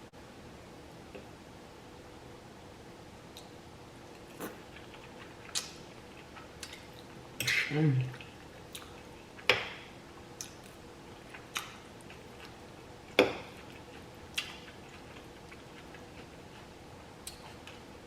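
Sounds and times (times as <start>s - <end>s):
chewing clicks and smacks: 10.4s - 12.6s, 13.3s - 16.3s, 17.2s - 17.8s.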